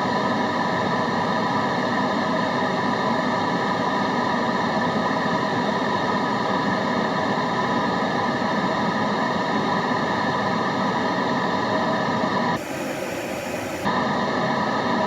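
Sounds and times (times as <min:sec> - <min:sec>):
faint steady tones: 0:12.5 - 0:14.9
white noise hiss: 0:12.6 - 0:13.9.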